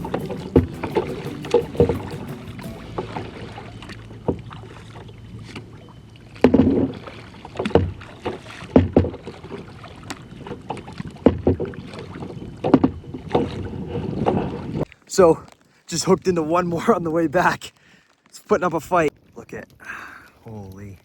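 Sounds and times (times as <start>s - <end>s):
paddle blades splashing in water: 0.0s - 15.8s
paddle knocking against hull: 7.6s - 9.4s, 11.2s - 11.8s.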